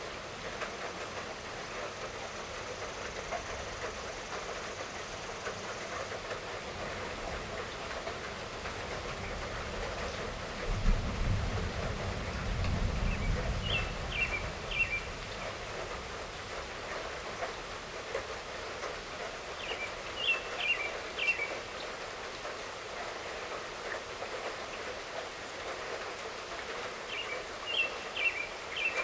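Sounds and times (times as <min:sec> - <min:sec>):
light rainfall: 0:00.0 - 0:29.0
distant thunder rumble: 0:09.1 - 0:16.2
bird chirping: 0:13.2 - 0:15.1, 0:19.6 - 0:21.6, 0:27.1 - 0:29.0.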